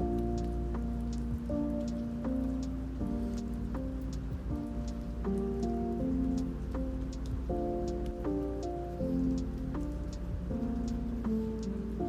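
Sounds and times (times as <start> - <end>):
gentle instrumental music: 0.0 - 12.0.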